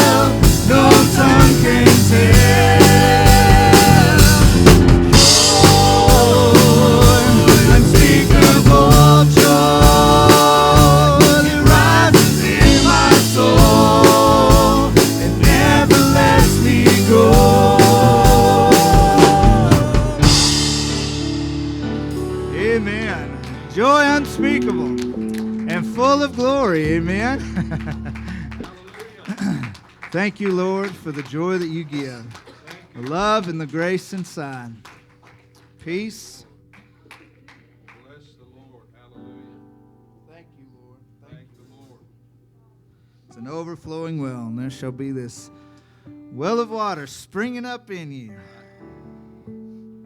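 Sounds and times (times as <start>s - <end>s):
voices singing: 0.0s - 21.2s
drum kit beat: 0.0s - 32.3s
worship band playing: 0.0s - 40.3s.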